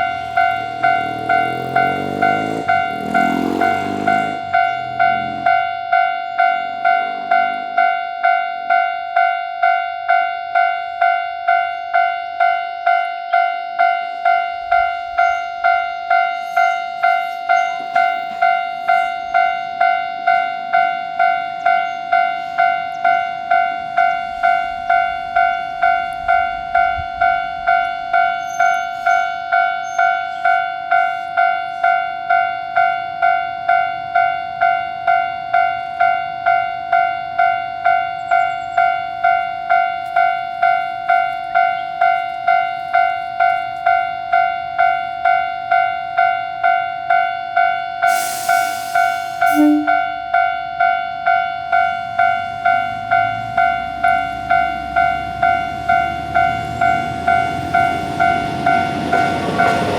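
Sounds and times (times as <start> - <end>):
faint low train rumble: 0.0 - 8.8, 48.2 - 59.9
level crossing warning bell: 0.0 - 59.9.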